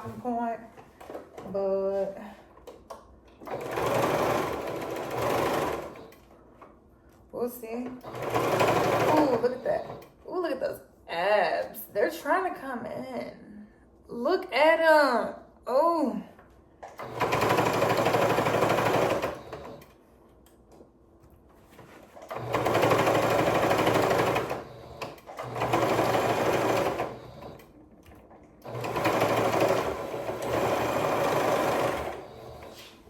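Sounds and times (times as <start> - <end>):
electric sewing machine stitching: 3.4 - 6.2, 8.0 - 10.2, 16.8 - 19.9, 22.2 - 27.8, 28.6 - 32.9.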